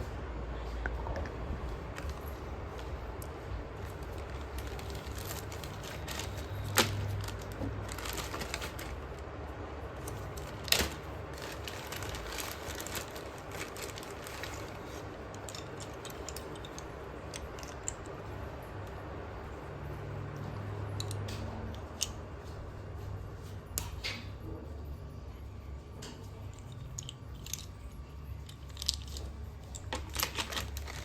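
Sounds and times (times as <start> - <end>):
crunching crackles: 1.3 - 18.1, 28.5 - 31.0.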